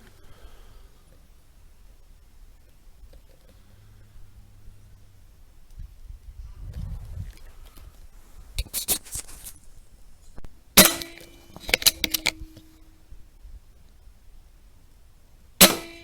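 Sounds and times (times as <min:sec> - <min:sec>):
rifle shot: 0:10.8 - 0:12.7, 0:15.6 - 0:16.0
rifle mechanism clicks: 0:10.8 - 0:12.8.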